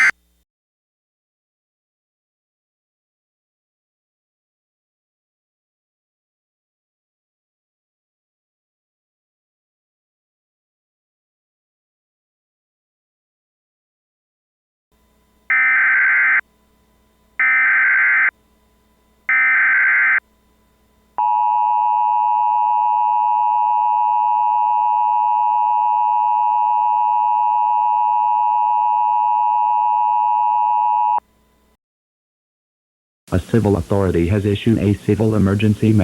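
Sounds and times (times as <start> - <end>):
data bursts: 17.4 - 18.3.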